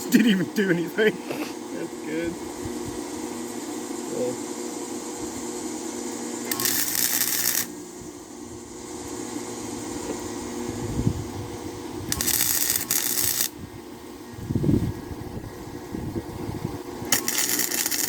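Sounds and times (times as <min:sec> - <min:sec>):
low machine hum: 0:00.0 - 0:18.0
welding arc crackling: 0:06.4 - 0:07.9, 0:12.0 - 0:13.6, 0:17.0 - 0:18.0.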